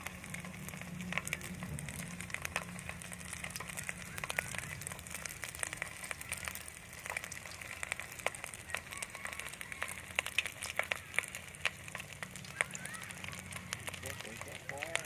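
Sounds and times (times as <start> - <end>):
food deep-frying in hot oil: 0.0 - 15.0.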